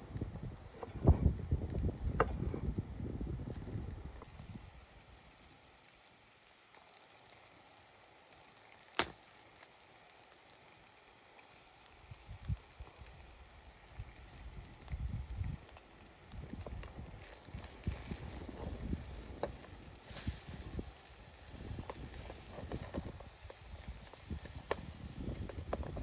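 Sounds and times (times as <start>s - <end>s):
faint steady hiss: 0.0s - 26.0s
sharp crack: 8.8s - 9.4s.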